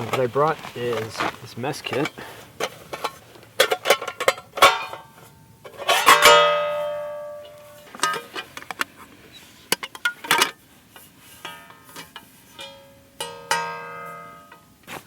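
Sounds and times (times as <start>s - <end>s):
metal piece ringing: 3.7s - 8.4s, 11.4s - 14.8s.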